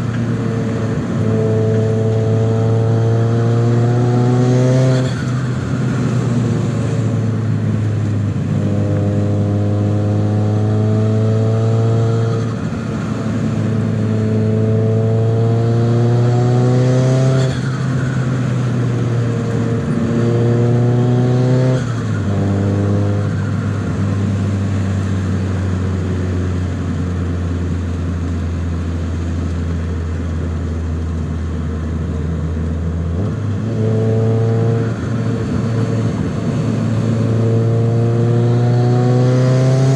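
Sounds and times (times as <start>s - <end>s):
car engine revving through gears: 0.1s - 7.2s, 8.3s - 13.0s, 13.6s - 18.2s, 18.8s - 24.6s, 33.0s - 39.9s.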